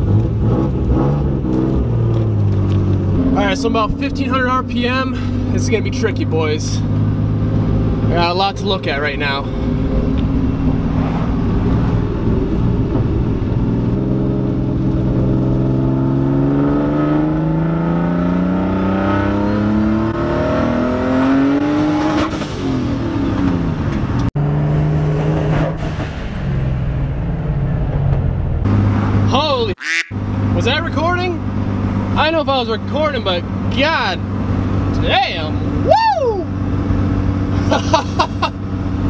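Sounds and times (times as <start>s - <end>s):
turbocharged car engine revving: 0.0s - 27.0s.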